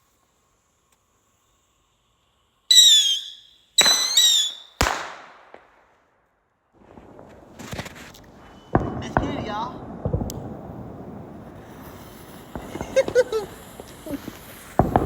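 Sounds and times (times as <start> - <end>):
firework bang: 2.7 - 5.7, 6.8 - 15.0
fireworks whistling: 2.7 - 5.7, 6.8 - 15.0.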